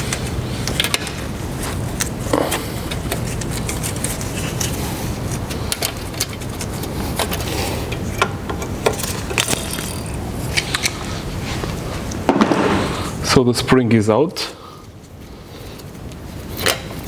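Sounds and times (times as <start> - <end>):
steady low hum: 0.0 - 16.5
metal clicks and scrapes: 5.7 - 11.0.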